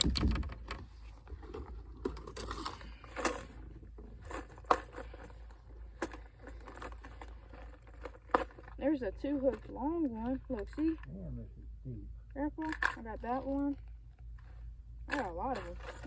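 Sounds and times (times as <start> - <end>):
tackle box clicking and rustling: 0.0 - 11.0.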